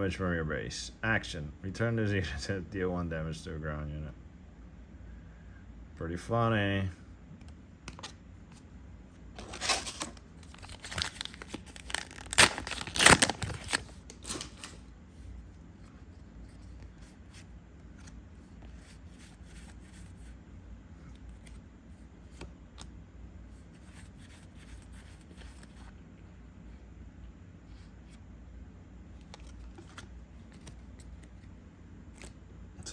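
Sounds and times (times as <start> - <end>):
foil pack tearing and crinkling: 9.4 - 14.8.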